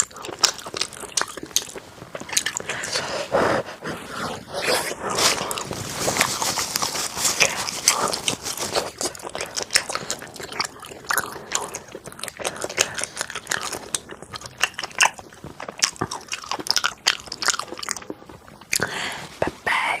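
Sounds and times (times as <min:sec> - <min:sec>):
person chewing crunchy food: 0:00.0 - 0:19.4.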